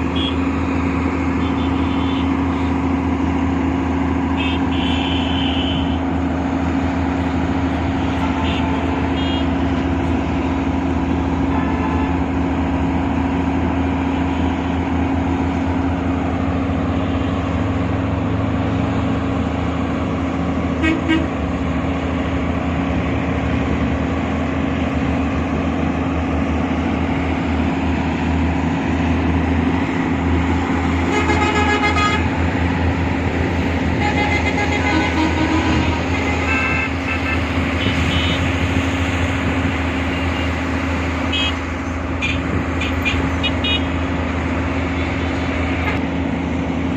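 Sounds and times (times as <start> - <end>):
vehicle horns tooting: 0.0 - 0.4, 1.4 - 2.7, 4.4 - 6.0, 7.9 - 9.6, 11.5 - 12.3, 20.8 - 21.4, 31.0 - 32.4, 33.9 - 38.6, 41.3 - 41.6, 42.2 - 44.0
excavator diesel engine: 0.0 - 46.9.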